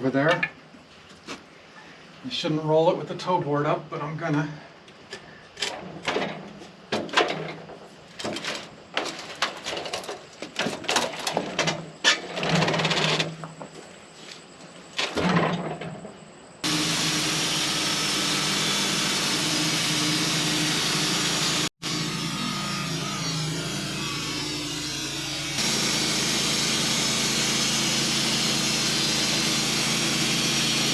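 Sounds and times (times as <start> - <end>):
sawmill blade cutting: 16.6 - 30.9
sawmill humming: 16.6 - 30.9.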